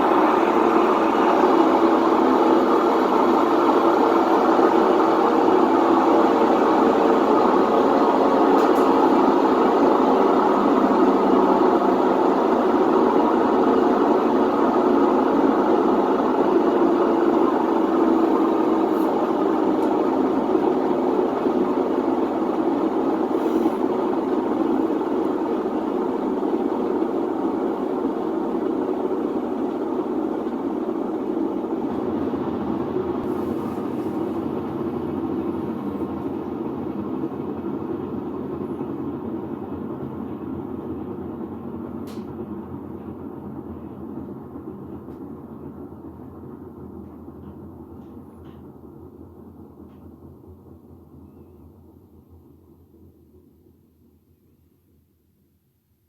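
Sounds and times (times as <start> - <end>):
washing machine drum spinning: 0.0 - 50.4.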